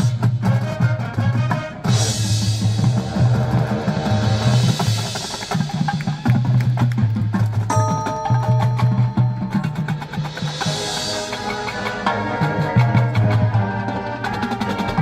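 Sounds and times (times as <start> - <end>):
marching band playing: 0.0 - 15.0
snare drum strokes: 8.6 - 15.0.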